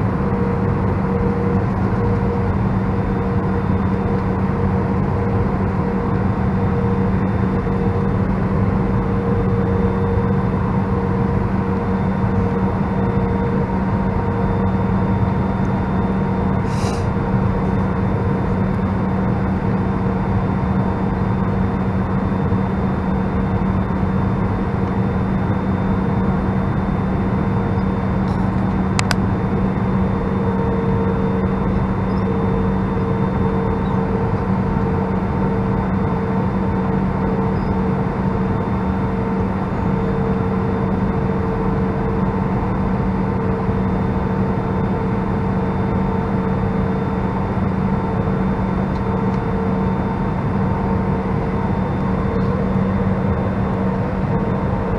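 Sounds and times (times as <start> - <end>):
aircraft engines droning: 0.0 - 54.9
constant humming tones: 0.0 - 54.9
rushing airflow: 16.6 - 17.2.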